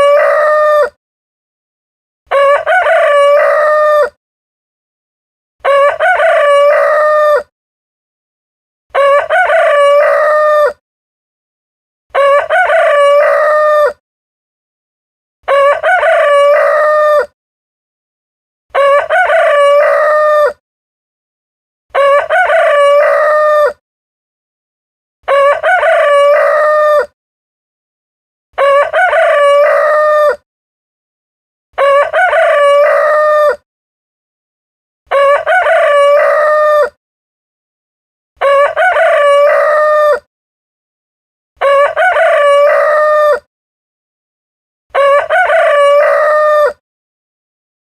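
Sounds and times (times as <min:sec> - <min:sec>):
rooster crowing: 0:00.0 - 0:01.0, 0:02.3 - 0:04.2, 0:05.6 - 0:07.5, 0:09.0 - 0:10.8, 0:12.1 - 0:14.0, 0:15.5 - 0:17.3, 0:18.8 - 0:20.6, 0:22.0 - 0:23.8, 0:25.3 - 0:27.1, 0:28.6 - 0:30.4, 0:31.8 - 0:33.6, 0:35.1 - 0:37.0, 0:38.4 - 0:40.3, 0:41.6 - 0:43.5, 0:44.9 - 0:46.8.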